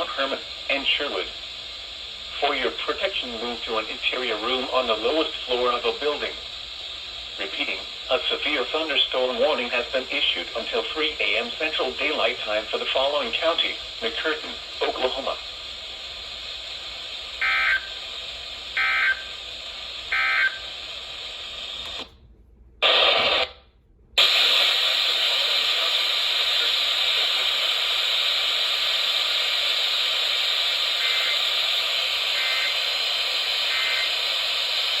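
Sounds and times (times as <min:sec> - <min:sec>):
radio static hiss: 0:00.0 - 0:22.1, 0:22.8 - 0:23.6, 0:24.2 - 0:35.0
buzzy digital data bursts: 0:32.4 - 0:32.8, 0:33.7 - 0:34.2.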